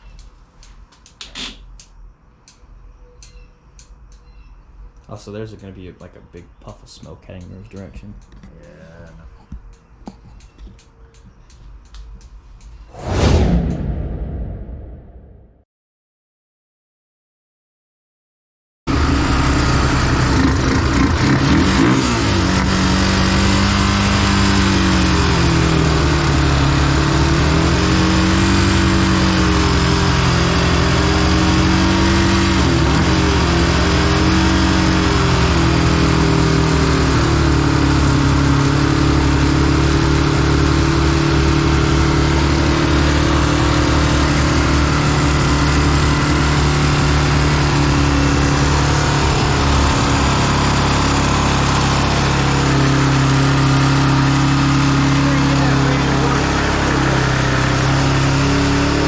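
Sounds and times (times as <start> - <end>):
quad engine running: 18.9 - 59.0.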